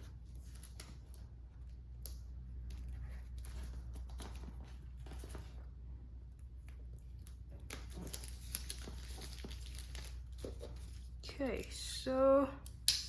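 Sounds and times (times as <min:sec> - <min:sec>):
shrink wrap crinkling: 0:06.4 - 0:11.3.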